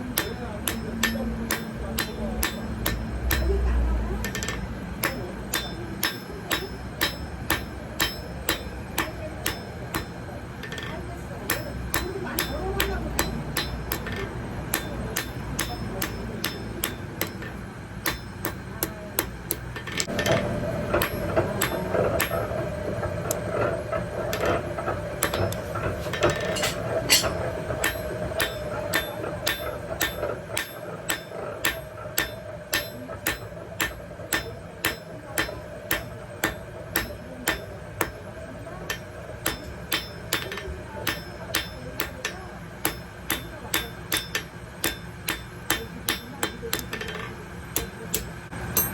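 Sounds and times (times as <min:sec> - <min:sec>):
hammer striking anvil: 0:00.0 - 0:24.6, 0:25.2 - 0:38.2, 0:38.9 - 0:48.9.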